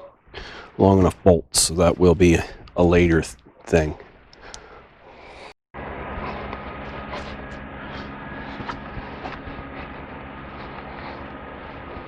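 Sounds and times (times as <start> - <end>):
steady engine-like hum: 5.8 - 12.0.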